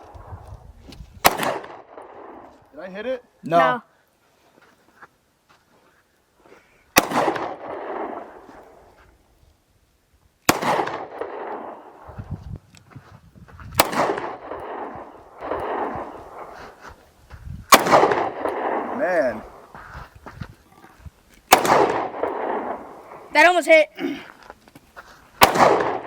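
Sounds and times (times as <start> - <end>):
gunshots with long echo: 1.2 - 2.6, 6.9 - 8.8, 10.4 - 12.2, 13.8 - 16.8, 17.7 - 19.8, 21.5 - 23.4, 25.4 - 26.0.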